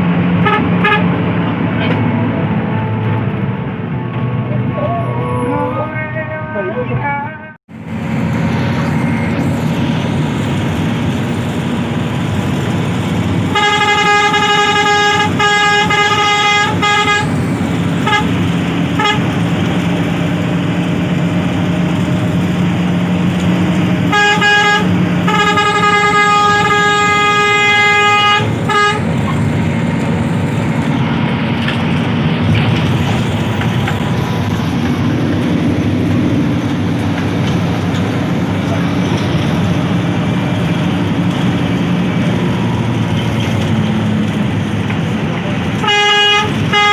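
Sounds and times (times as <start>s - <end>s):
engine and road noise: 0.0s - 46.9s
bus horn blasts: 0.4s - 1.2s, 13.4s - 19.4s, 24.0s - 29.4s, 45.8s - 46.9s.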